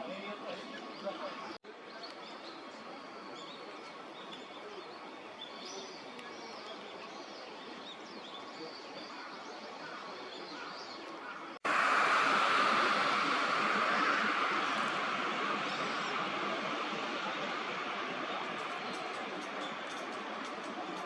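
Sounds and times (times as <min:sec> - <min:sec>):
steady background hiss: 0:11.7 - 0:21.0.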